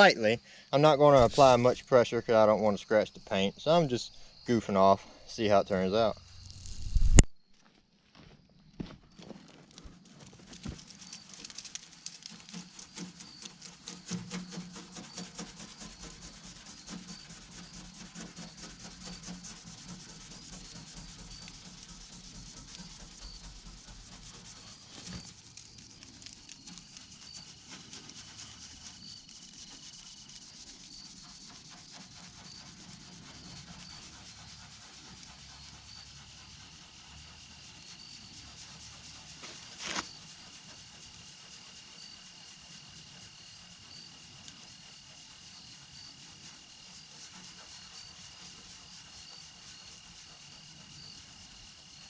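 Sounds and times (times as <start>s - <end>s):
steel wool scrubbing paint: 0.8s - 6.1s, 9.6s - 52.0s.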